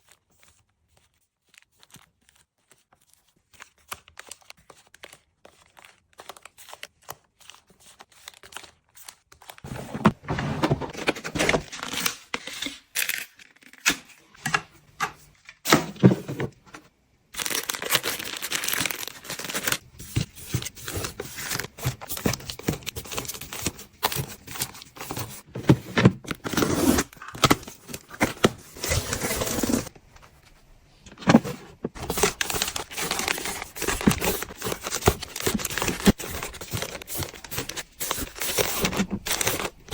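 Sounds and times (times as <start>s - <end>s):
packaging crinkling and tearing: 17.3s - 25.5s, 31.1s - 39.9s.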